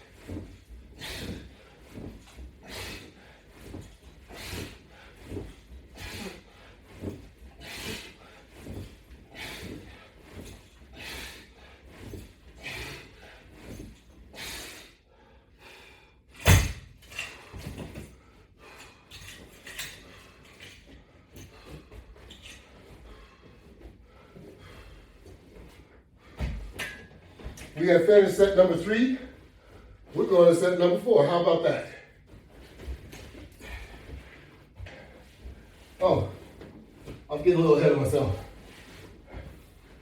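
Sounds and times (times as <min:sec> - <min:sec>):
man breathing forcefully: 0:00.1 - 0:20.6, 0:32.1 - 0:36.6.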